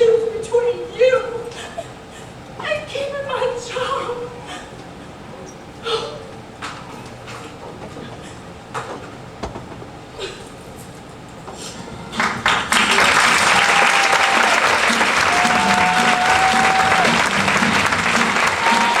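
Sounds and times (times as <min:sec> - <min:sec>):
audience applause: 0:12.1 - 0:19.0.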